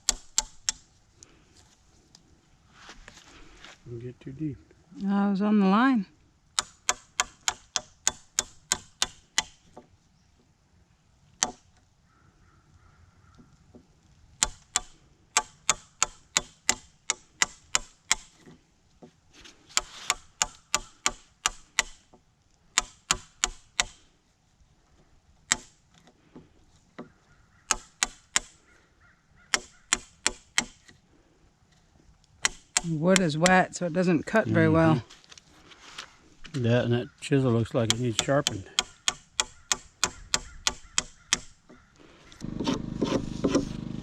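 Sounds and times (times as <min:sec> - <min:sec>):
hammer striking chisel in wood: 0:00.0 - 0:00.8, 0:06.6 - 0:09.8, 0:11.4 - 0:11.6, 0:14.4 - 0:18.6, 0:19.8 - 0:22.2, 0:22.8 - 0:24.0, 0:25.5 - 0:25.8, 0:27.7 - 0:28.6, 0:29.5 - 0:30.9, 0:32.4 - 0:33.2, 0:37.9 - 0:41.6, 0:42.4 - 0:43.9.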